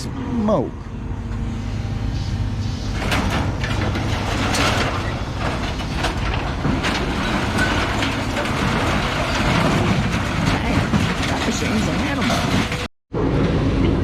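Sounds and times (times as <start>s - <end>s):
machine rumble: 0.8s - 14.0s
scrap metal clanks and crunches: 2.2s - 12.9s.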